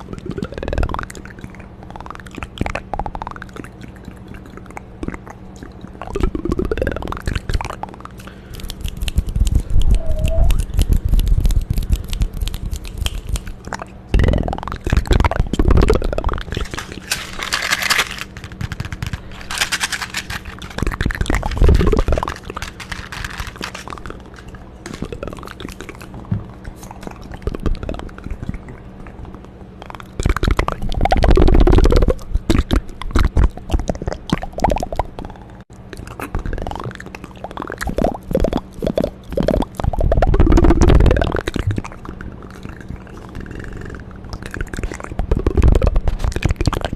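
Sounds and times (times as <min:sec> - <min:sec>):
wet mouth clicks and smacks: 0:00.1 - 0:17.1
deep gurgling rumble: 0:13.7 - 0:17.1, 0:37.7 - 0:46.9.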